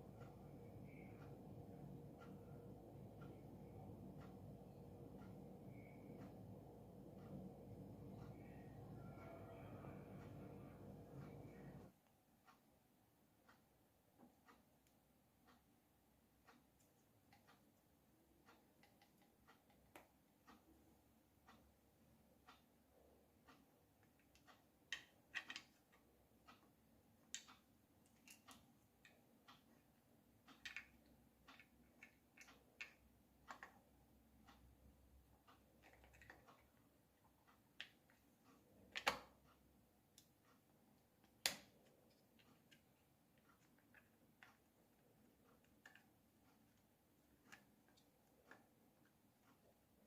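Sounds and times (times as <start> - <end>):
hand tools clicking and tapping: 24.0 - 26.0.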